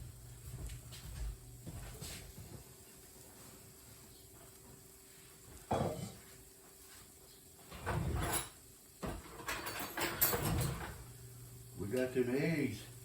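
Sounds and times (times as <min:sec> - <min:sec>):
faint steady hum: 0:00.0 - 0:13.0
kitchen knocking and clatter: 0:07.7 - 0:11.1.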